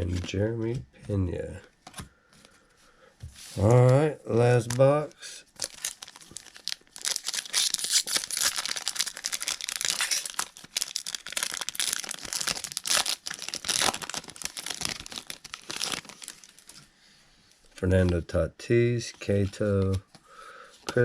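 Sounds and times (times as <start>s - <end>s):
plastic wrapping crinkling and tearing: 3.6s - 16.8s.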